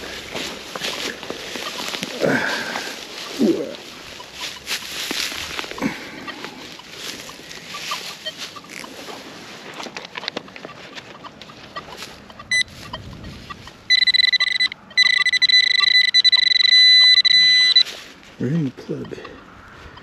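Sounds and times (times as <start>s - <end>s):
high electronic detector tone: 0.0s - 9.0s, 11.6s - 19.4s
scraping in soil: 0.0s - 11.1s.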